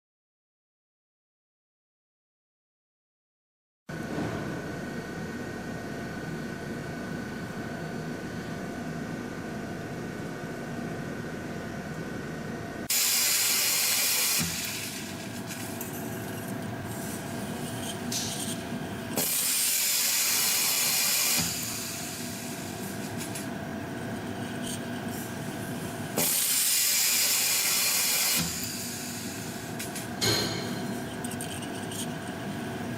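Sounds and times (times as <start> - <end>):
spring coiling machine humming: 12.8 - 32.9.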